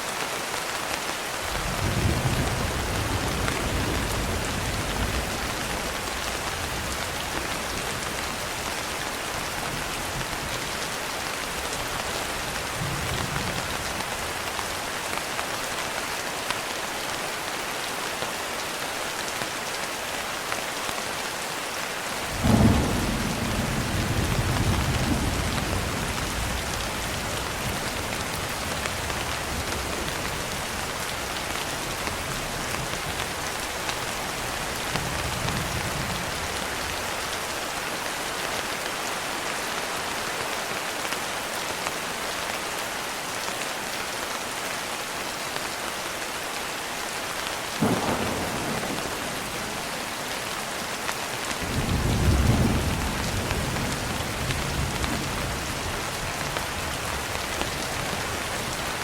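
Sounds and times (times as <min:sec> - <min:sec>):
steady rain: 0:00.0 - 0:59.0
thunderclap rumbling: 0:47.8 - 0:49.9.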